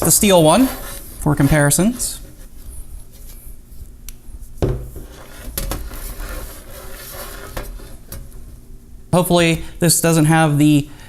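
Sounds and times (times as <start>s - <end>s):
metal sheets rubbing and scraping: 0.0s - 2.5s, 5.0s - 8.2s.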